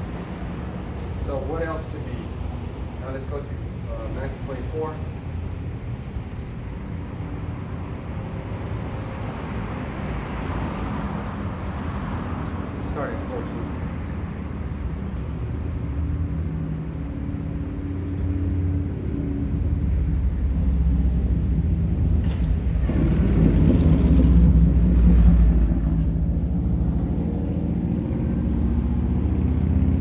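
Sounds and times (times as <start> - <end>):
road noise: 0.0 - 30.0
car engine hum: 13.8 - 30.0.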